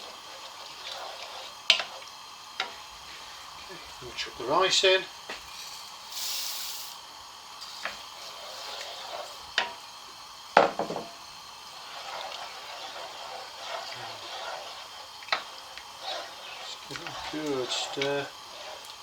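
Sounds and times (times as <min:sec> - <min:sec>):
liquid bubbling in pan: 0:00.0 - 0:19.0
steady hiss: 0:00.0 - 0:19.0
utensil knocking against pan: 0:10.6 - 0:11.2.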